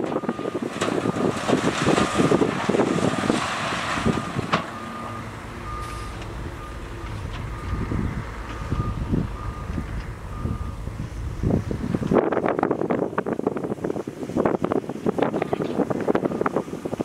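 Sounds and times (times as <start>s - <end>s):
loud rattling and crunching: 0.0s - 5.5s
diesel engine: 0.0s - 17.0s
reversing alarm beeping: 0.1s - 1.3s, 4.2s - 10.9s, 16.2s - 16.6s.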